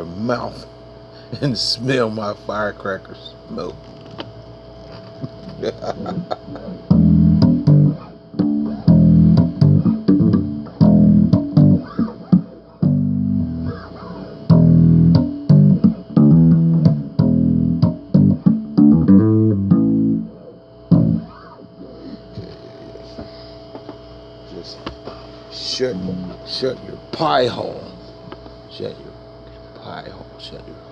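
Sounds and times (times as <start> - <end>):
bass guitar riffs: 5.3 - 22.4.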